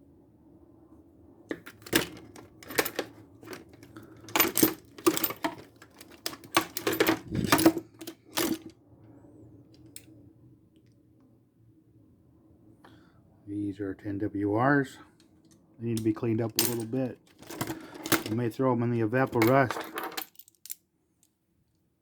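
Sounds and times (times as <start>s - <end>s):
metal pliers clinking: 1.5s - 8.7s, 16.6s - 18.4s, 19.3s - 20.8s.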